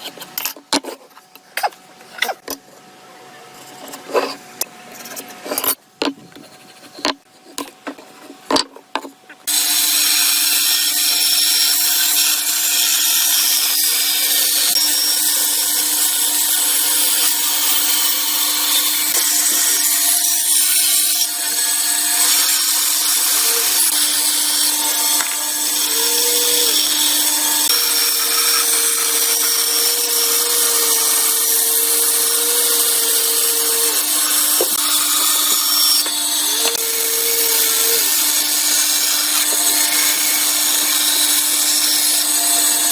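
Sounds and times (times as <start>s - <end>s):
power tool whirring on wood: 9.4s - 42.9s.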